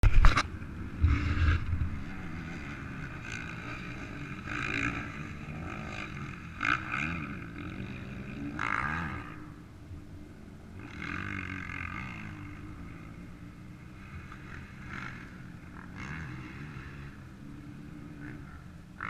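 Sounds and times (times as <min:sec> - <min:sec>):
off-road motorcycle engines revving: 0:00.0 - 0:19.0.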